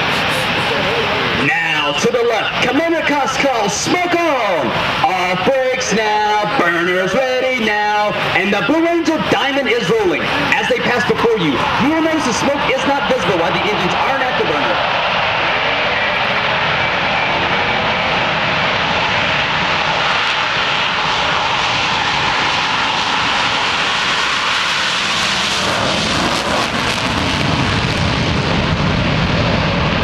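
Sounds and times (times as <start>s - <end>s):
jets taking off roaring: 0.0s - 30.0s.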